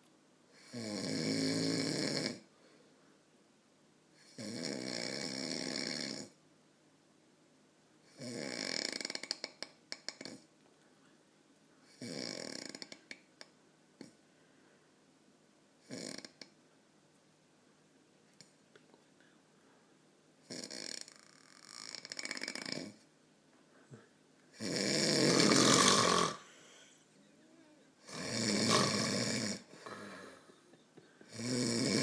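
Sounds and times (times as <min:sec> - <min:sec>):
man snoring: 0:00.5 - 0:02.5, 0:04.2 - 0:06.4, 0:08.1 - 0:10.4, 0:11.9 - 0:13.1, 0:15.8 - 0:16.5, 0:20.4 - 0:23.0, 0:24.5 - 0:26.9, 0:28.0 - 0:30.6, 0:31.2 - 0:32.0.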